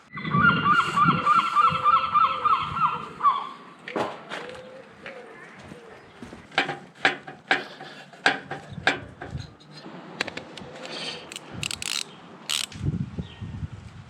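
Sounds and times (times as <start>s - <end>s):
ratchet wrench clicking: 11.3s - 12.8s.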